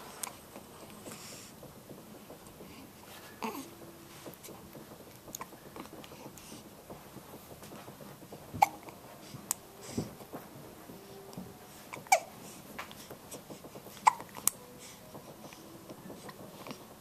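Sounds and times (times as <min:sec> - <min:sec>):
baby hiccupping: 0:08.6 - 0:09.0, 0:11.9 - 0:12.3, 0:14.0 - 0:14.6.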